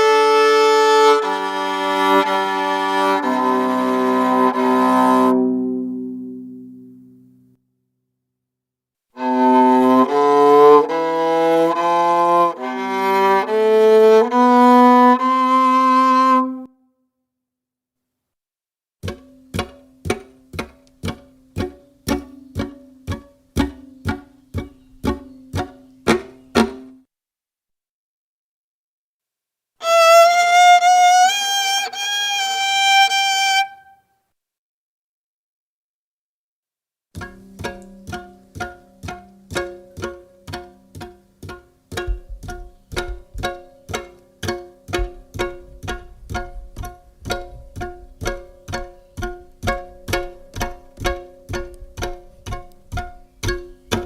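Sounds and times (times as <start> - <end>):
viola bowed scale: 0.0 - 7.0, 9.2 - 16.7, 29.8 - 34.0, 37.2 - 54.0
viola bowing a high note: 0.0 - 7.0, 9.2 - 13.6, 29.8 - 34.1.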